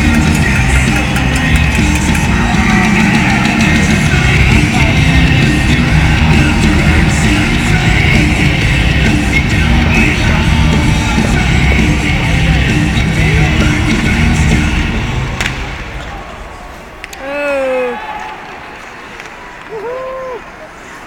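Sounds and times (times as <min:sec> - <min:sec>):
loud rock music: 0:00.0 - 0:16.0
shouted vocals: 0:17.1 - 0:18.3.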